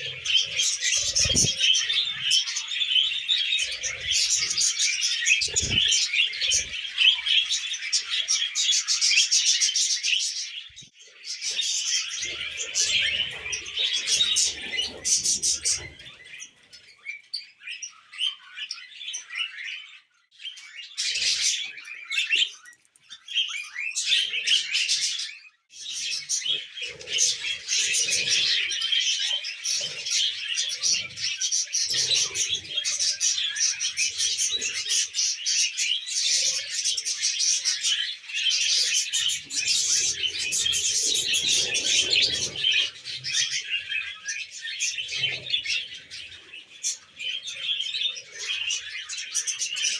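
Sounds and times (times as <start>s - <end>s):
budgerigars chattering: 0.0s - 10.6s, 23.3s - 49.9s.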